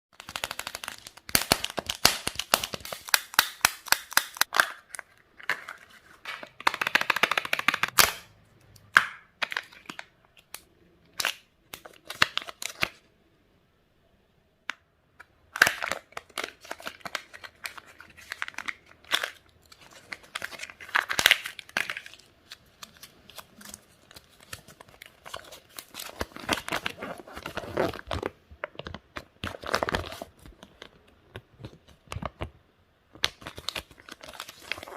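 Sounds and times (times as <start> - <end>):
candy wrappers crinkling: 0.2 - 8.0, 15.5 - 32.3, 33.2 - 34.9.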